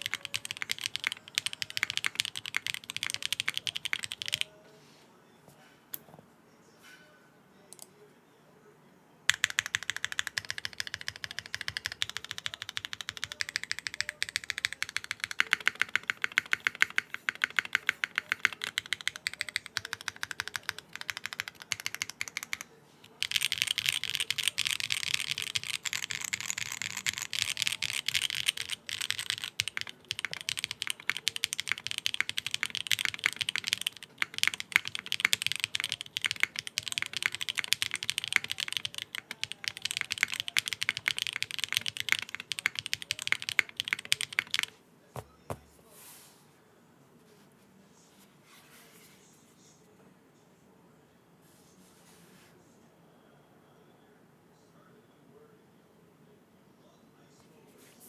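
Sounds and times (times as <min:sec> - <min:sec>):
clacky mechanical keyboard typing: 0:00.0 - 0:04.5, 0:09.3 - 0:44.7.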